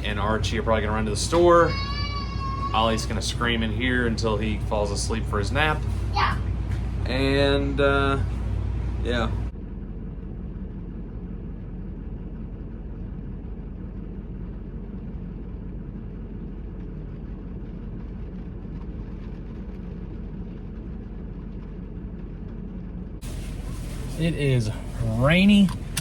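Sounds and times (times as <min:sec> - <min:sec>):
road noise: 0:00.0 - 0:09.7, 0:23.2 - 0:26.0
car driving rumble: 0:00.0 - 0:26.0.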